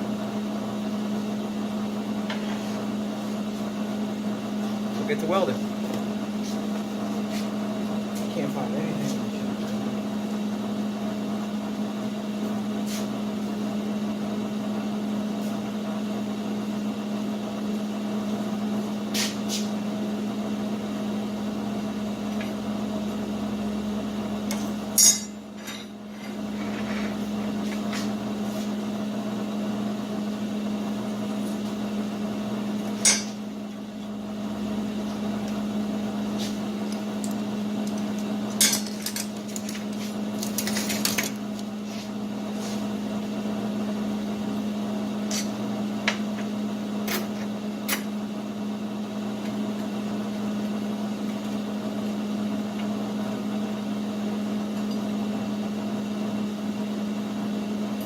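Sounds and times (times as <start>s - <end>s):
machine hum: 19.7s - 58.0s.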